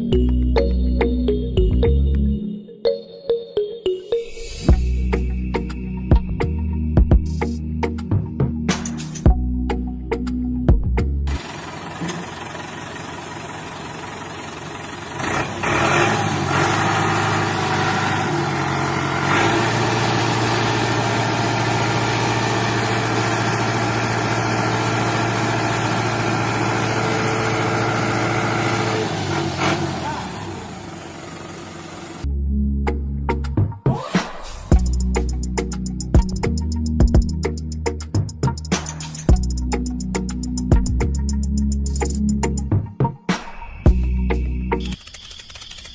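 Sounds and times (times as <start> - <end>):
engine hum: 9.4 - 33.6.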